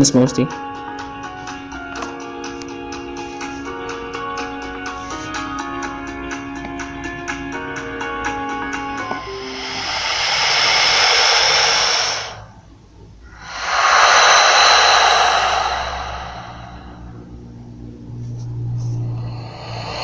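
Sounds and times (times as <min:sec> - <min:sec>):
whooshing rushes of noise: 0:09.0 - 0:12.6, 0:13.3 - 0:17.5.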